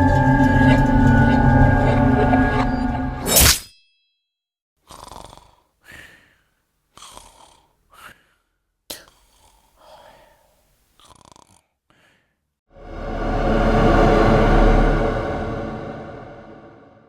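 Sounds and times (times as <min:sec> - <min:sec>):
person rasping breaths: 0:04.8 - 0:12.4.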